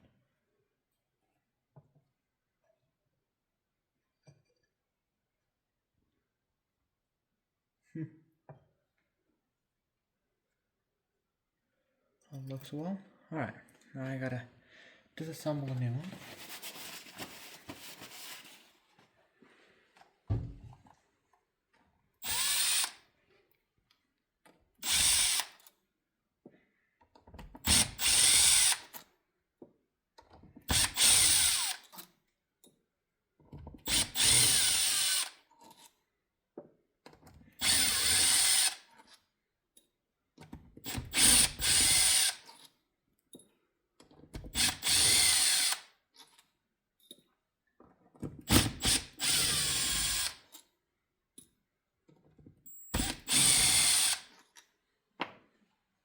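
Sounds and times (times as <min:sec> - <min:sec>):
cordless driver bursts: 0:22.2 - 0:23.0, 0:24.8 - 0:25.6, 0:27.6 - 0:28.9, 0:30.7 - 0:31.8, 0:33.9 - 0:35.4, 0:37.6 - 0:38.9, 0:40.9 - 0:42.4, 0:44.5 - 0:45.8, 0:48.6 - 0:50.4, 0:52.8 - 0:54.3.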